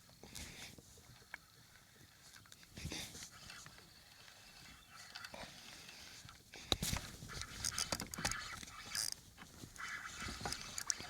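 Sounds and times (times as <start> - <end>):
fishing reel clicks: 7.6 - 9.2, 10.4 - 11.0.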